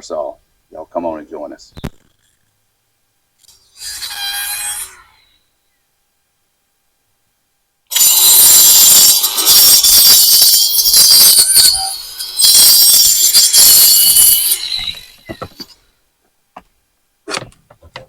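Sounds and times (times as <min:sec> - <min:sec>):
cutoff wheel screeching through metal: 0:03.8 - 0:05.4, 0:07.9 - 0:15.8.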